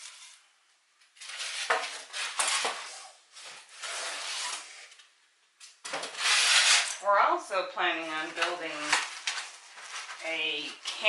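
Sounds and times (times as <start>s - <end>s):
styrofoam scraping in cardboard box: 1.2s - 4.9s, 6.1s - 7.0s.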